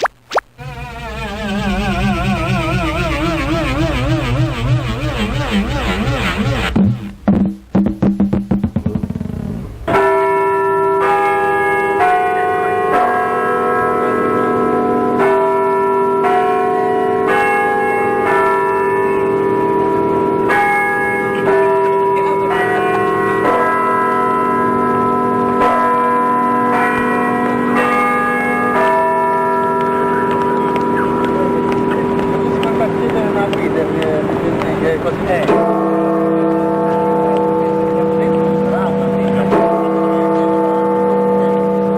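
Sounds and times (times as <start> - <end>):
church bells ringing: 9.9 - 41.9.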